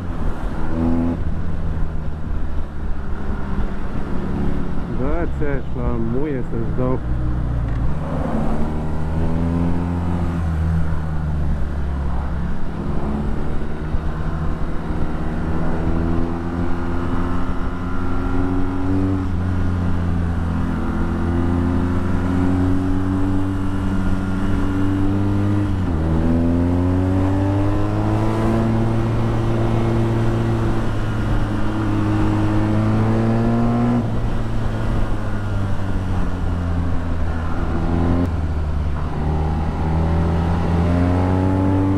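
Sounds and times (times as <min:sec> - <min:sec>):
motorcycle engine accelerating: 0:12.4 - 0:41.9.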